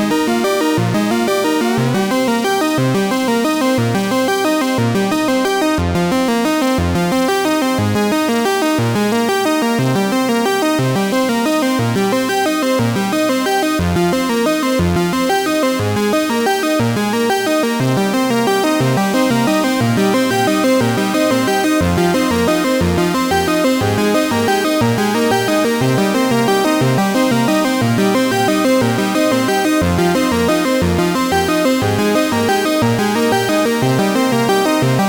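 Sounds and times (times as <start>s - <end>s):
electronic synthesizer music: 18.6s - 35.0s.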